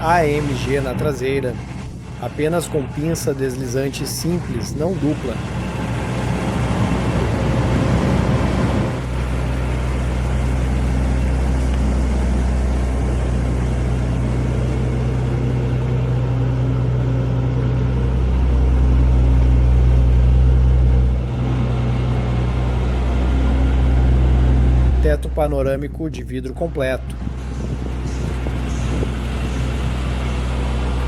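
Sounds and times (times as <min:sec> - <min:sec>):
car engine idling: 0:00.0 - 0:31.0.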